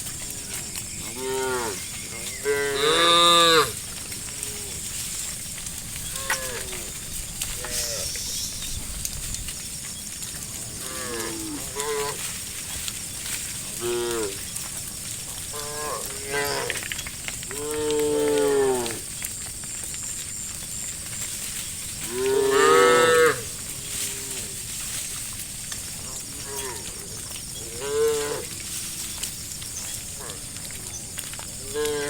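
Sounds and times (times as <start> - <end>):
steady high hiss: 0.0 - 30.4
cattle mooing: 0.2 - 4.9, 6.0 - 8.2, 10.8 - 12.2, 15.5 - 16.8, 17.5 - 19.0, 22.0 - 24.6, 26.0 - 28.6.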